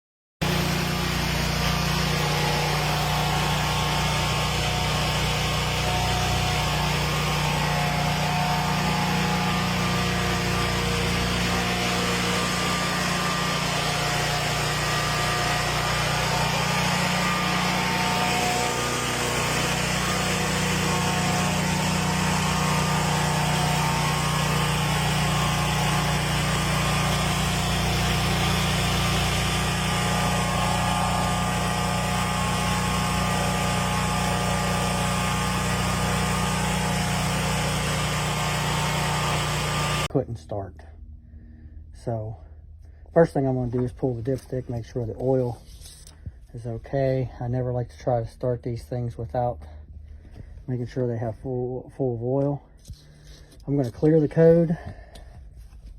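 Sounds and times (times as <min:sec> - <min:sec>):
small motor running: 0:00.4 - 0:40.1.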